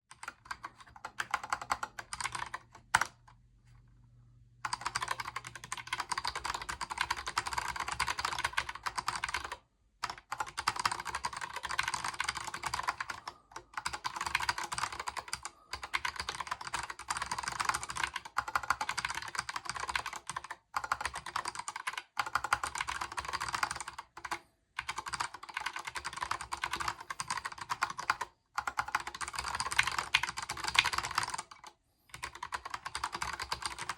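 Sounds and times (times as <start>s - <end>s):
fast typing on mechanical keyboard: 0.1s - 3.3s, 4.6s - 33.9s.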